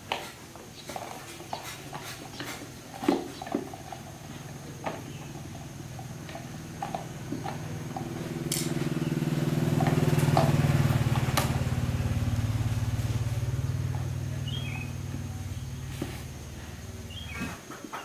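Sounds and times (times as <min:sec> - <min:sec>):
small motorcycle engine running: 0:02.9 - 0:17.6.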